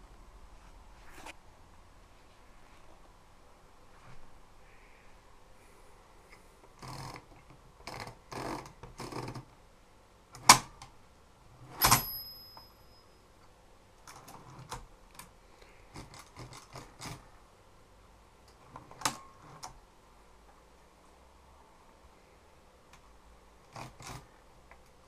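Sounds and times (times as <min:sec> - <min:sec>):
typewriter bell ring: 0:11.8 - 0:13.2.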